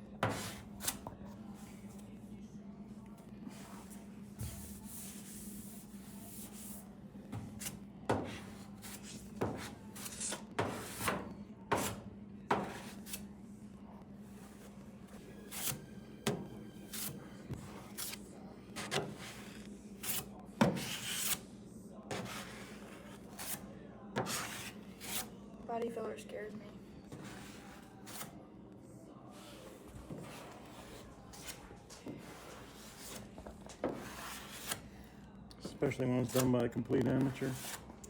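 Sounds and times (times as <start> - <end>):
spreader scraping filler on panel: 29.3 - 35.0.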